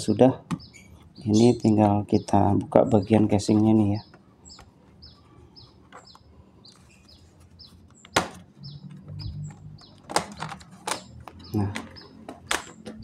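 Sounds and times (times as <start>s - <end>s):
small bird chirping: 0.0s - 13.0s
laptop casing click: 9.8s - 13.0s.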